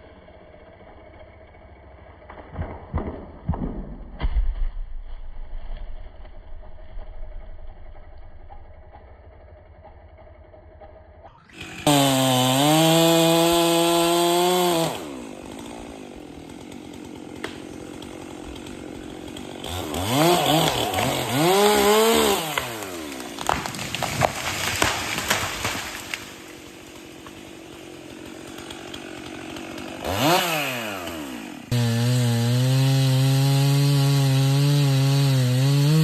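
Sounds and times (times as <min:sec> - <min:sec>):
chainsaw revving and idling: 0:08.6 - 0:36.0.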